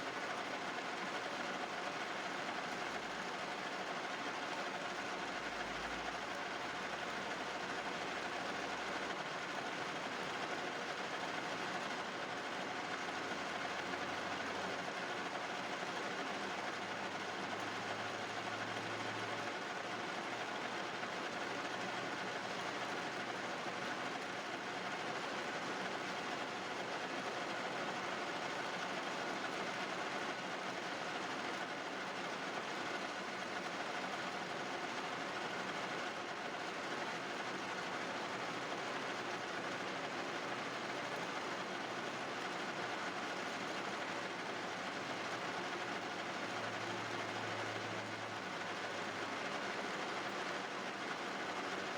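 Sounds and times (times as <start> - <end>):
faint steady whine: 0.0 - 51.9.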